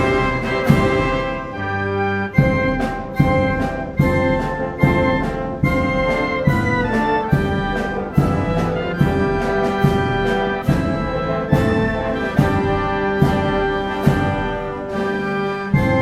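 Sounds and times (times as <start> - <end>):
brass and orchestral music: 0.0 - 16.0.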